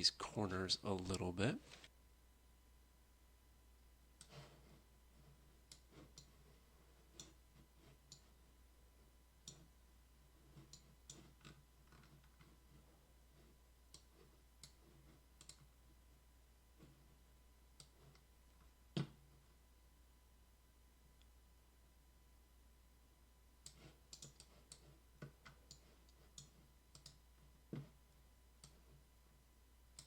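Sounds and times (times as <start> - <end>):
low steady hum: 0.0 - 30.0
computer mouse clicks: 4.2 - 4.6, 5.6 - 6.4, 7.0 - 8.4, 9.4 - 9.7, 10.6 - 12.6, 13.9 - 15.7, 17.7 - 18.3, 23.6 - 27.3, 28.6 - 29.0.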